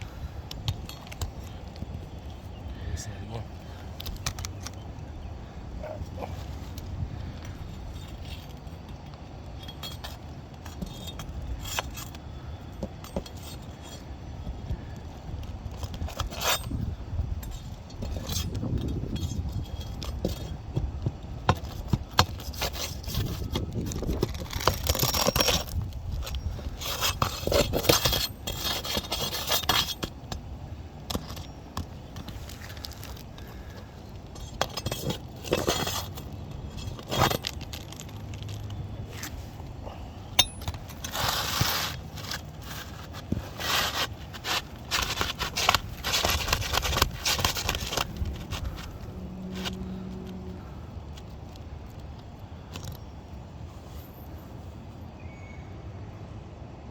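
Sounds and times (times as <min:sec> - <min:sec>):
tools clinking and knocking: 0:17.4 - 0:50.0.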